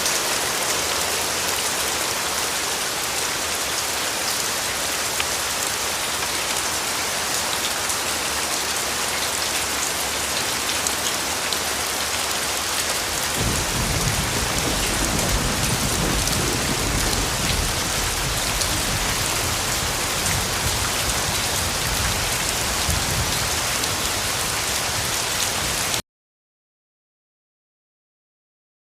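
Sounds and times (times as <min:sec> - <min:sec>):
heavy rain falling: 0:00.0 - 0:26.0
thunder rumbling: 0:13.4 - 0:23.6.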